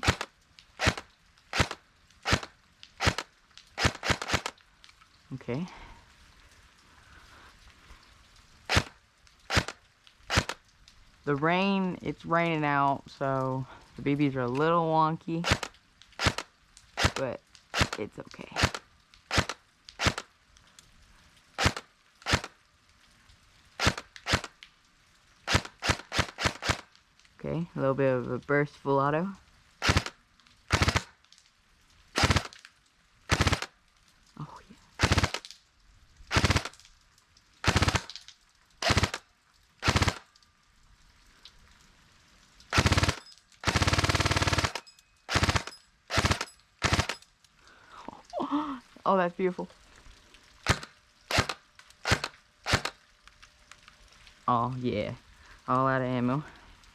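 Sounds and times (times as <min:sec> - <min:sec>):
airsoft rifle shots: 0:00.0 - 0:04.6, 0:08.7 - 0:08.9, 0:09.5 - 0:10.6, 0:15.4 - 0:17.2, 0:17.8 - 0:18.0, 0:18.6 - 0:20.3, 0:21.6 - 0:22.5, 0:23.8 - 0:24.5, 0:25.5 - 0:26.9, 0:29.8 - 0:31.1, 0:32.2 - 0:32.6, 0:33.3 - 0:33.7, 0:35.0 - 0:35.4, 0:36.3 - 0:36.8, 0:37.6 - 0:38.2, 0:38.8 - 0:39.2, 0:39.8 - 0:40.2, 0:42.7 - 0:47.2, 0:50.6 - 0:53.0.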